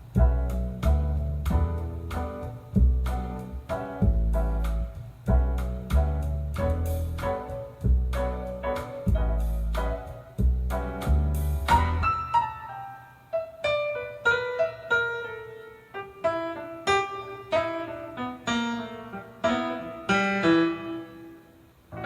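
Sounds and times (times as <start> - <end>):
bass part: 0.0 - 12.4
piano single notes: 0.0 - 22.0.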